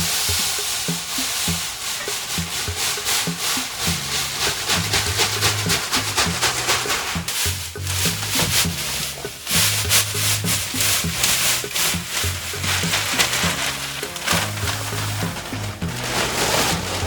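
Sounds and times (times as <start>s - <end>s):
scratchy brushed rhythm: 0.0s - 17.0s
low bass line: 7.4s - 17.0s.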